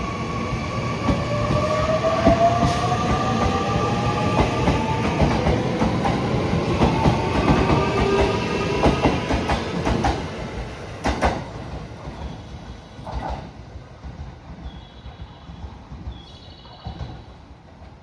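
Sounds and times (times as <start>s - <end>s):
train wheels clattering over rail joints: 4.3s - 12.3s.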